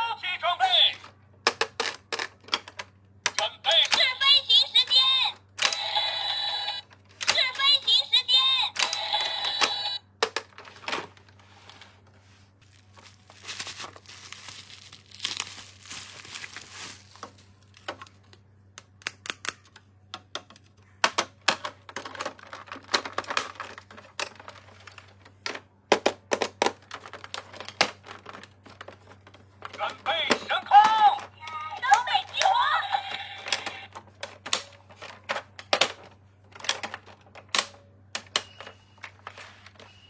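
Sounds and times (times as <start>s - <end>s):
plastic packaging crinkling and tearing: 12.6s - 17.9s.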